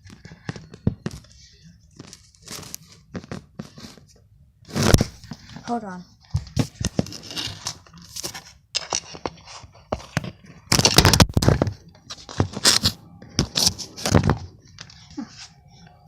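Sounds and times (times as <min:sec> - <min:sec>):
rustling and handling noise: 0:00.0 - 0:16.0.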